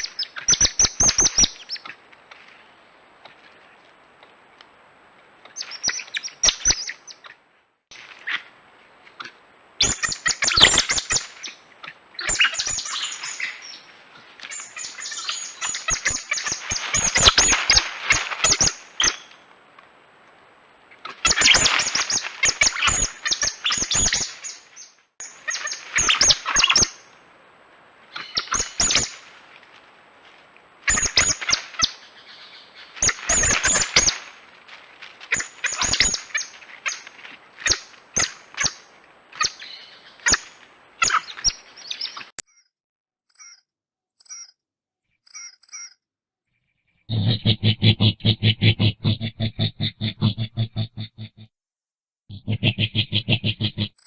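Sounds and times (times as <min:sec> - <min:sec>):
coati chirping and clicking: 0:47.1 - 0:51.5, 0:52.3 - 0:54.0.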